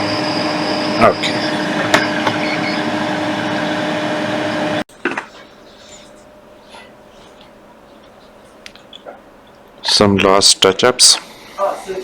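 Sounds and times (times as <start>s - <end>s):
heat gun blower humming: 0.0s - 4.8s.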